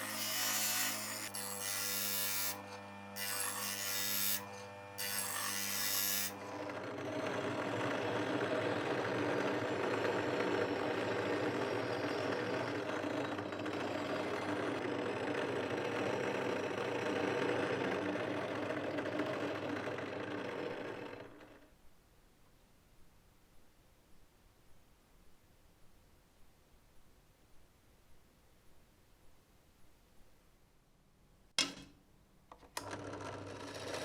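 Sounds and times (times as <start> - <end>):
power tool running under load: 0.0 - 21.6, 32.8 - 34.0.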